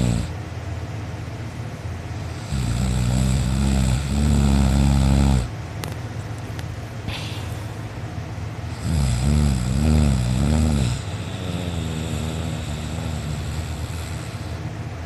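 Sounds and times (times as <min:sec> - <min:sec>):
person snoring: 0:00.0 - 0:00.4, 0:02.3 - 0:05.5, 0:07.1 - 0:07.7, 0:08.7 - 0:14.6.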